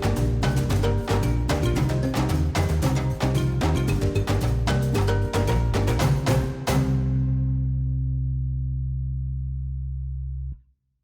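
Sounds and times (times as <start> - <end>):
background music with percussive beat: 0.0 - 7.4.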